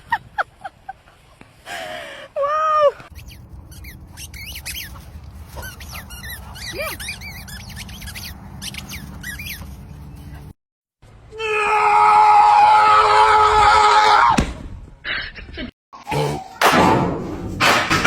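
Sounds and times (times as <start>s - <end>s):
high squeaky chirps: 3.1s - 10.4s
loud steady scream: 11.3s - 14.4s.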